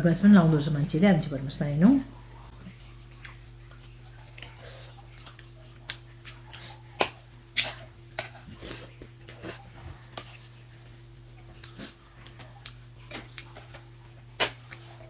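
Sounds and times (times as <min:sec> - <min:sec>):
mouth clicks and smacks eating: 0:02.4 - 0:09.8, 0:10.9 - 0:15.0.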